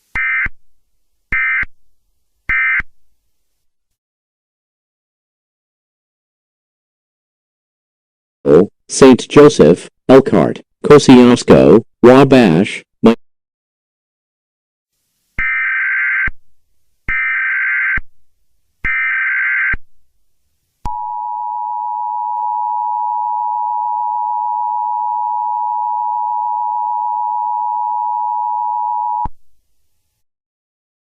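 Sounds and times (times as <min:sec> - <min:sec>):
two-tone alarm: 0:15.4 - 0:16.3, 0:17.1 - 0:18.0, 0:18.9 - 0:19.8, 0:20.9 - 0:29.3.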